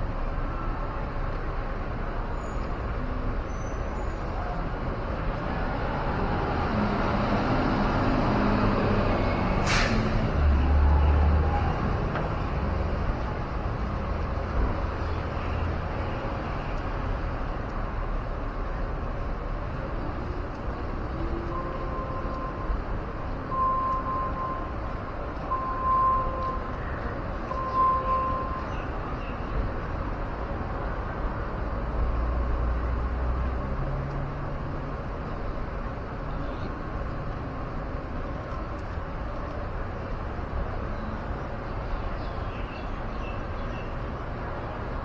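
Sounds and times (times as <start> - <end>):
street traffic: 0.0 - 45.0
air brake hiss: 9.6 - 10.2.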